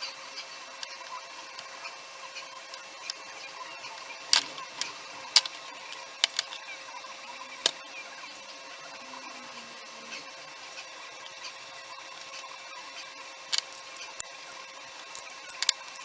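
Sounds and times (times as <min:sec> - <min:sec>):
faint steady hum: 0:00.0 - 0:16.0
tools clicking and knocking: 0:04.3 - 0:06.6, 0:12.1 - 0:16.0.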